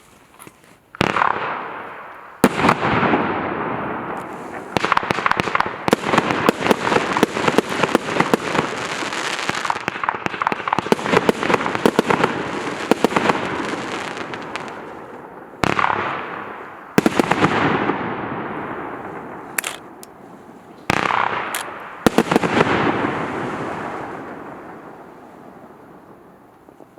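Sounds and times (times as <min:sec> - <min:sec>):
fireworks bursts with crackle: 0:00.0 - 0:26.9
fireworks rapid pops: 0:04.1 - 0:16.1, 0:20.8 - 0:23.0.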